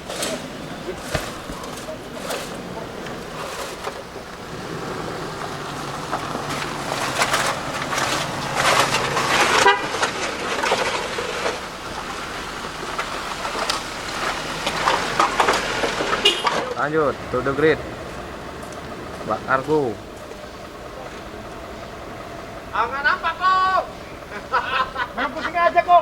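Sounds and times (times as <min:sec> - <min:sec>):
passing road traffic: 0:00.0 - 0:26.0
vehicle horn honking: 0:09.5 - 0:10.0, 0:16.2 - 0:16.7.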